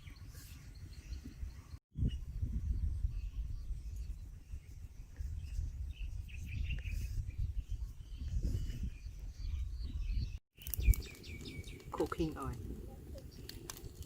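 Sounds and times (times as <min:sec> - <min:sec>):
birds chirping: 0:00.0 - 0:14.0.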